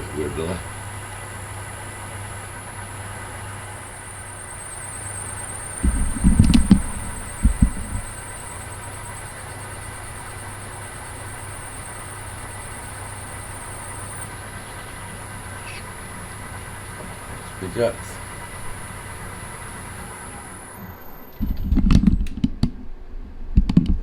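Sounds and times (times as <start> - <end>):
metal lathe humming: 0.0 - 21.4
faint high whine: 0.0 - 22.2
drill bit cutting brass: 3.7 - 14.4
loud dull knocks: 5.7 - 8.5, 23.5 - 24.0.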